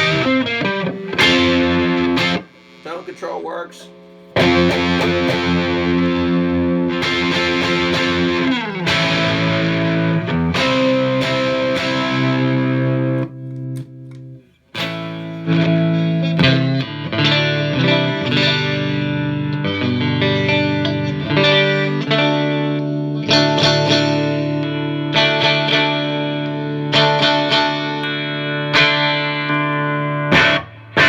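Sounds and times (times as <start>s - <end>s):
distorted electric guitar chords: 0.0s - 31.0s.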